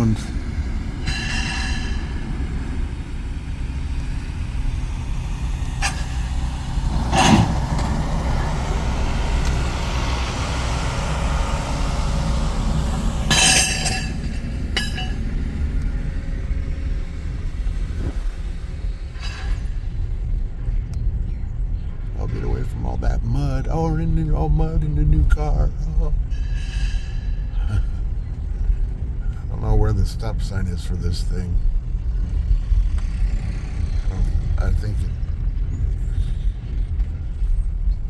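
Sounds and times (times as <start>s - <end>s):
sharp metal clanks: 0.0s - 18.4s
low engine rumble: 0.0s - 38.0s.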